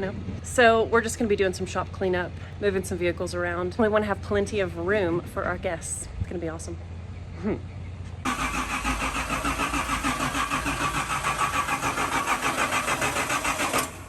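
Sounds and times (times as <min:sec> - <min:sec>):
truck engine cranking on starter: 0:08.2 - 0:14.0.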